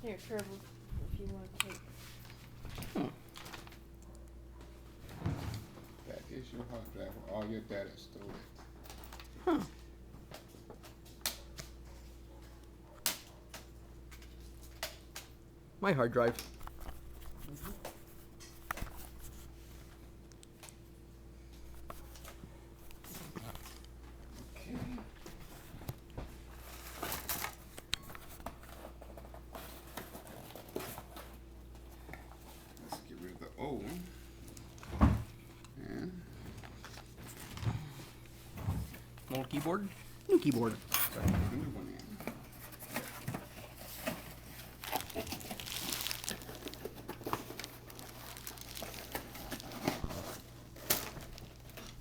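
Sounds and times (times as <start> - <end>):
plastic wrapping crinkling: 39.1 - 41.2, 41.8 - 52.0.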